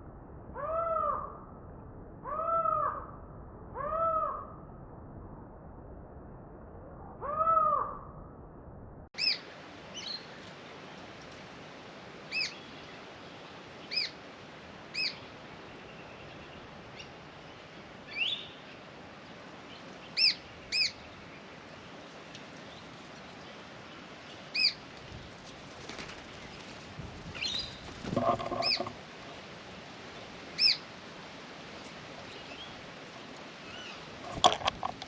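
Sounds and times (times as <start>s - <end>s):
steady background hiss: 9.2s - 35.0s
birds chirping: 27.4s - 29.0s.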